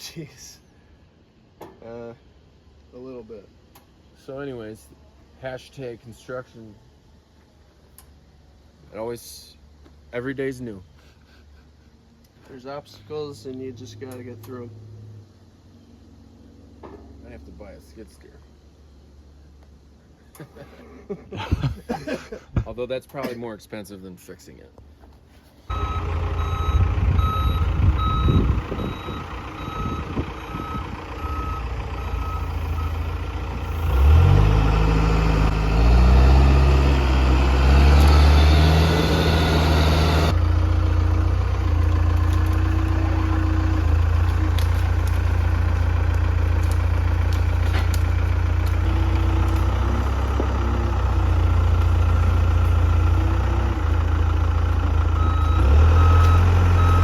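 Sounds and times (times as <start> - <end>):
backup alarm beeping: 25.7 - 33.2, 55.1 - 57.0
heavy diesel engine: 25.7 - 57.0.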